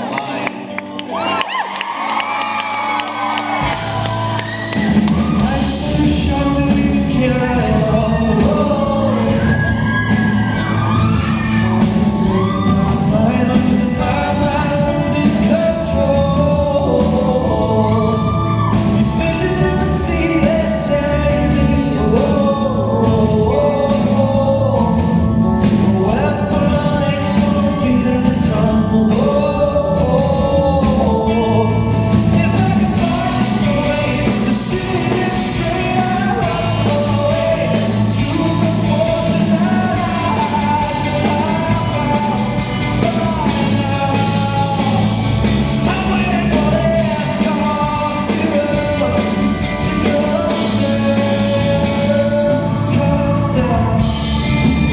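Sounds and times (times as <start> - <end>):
live pop-rock band: 0.0 - 54.9.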